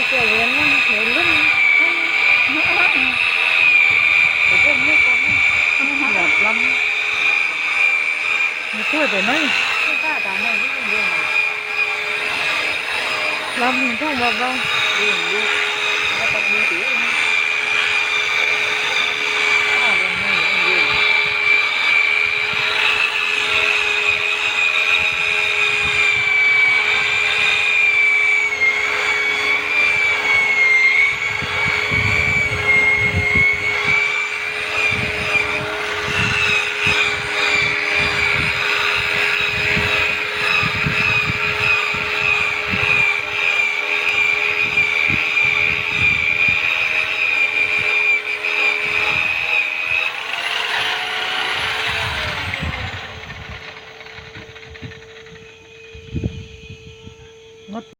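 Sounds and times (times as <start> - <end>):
electric polisher whining: 0.0 - 57.9.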